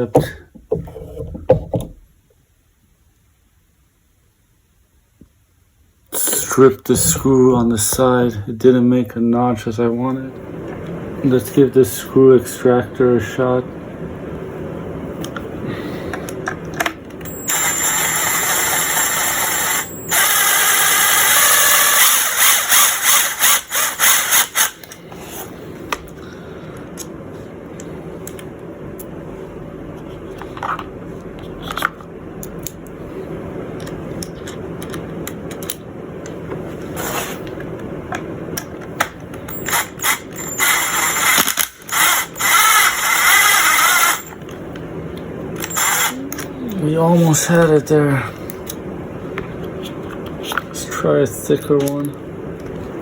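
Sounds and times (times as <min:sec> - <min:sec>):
power drill grinding screw: 0:17.3 - 0:24.8, 0:39.5 - 0:44.4, 0:45.6 - 0:46.1.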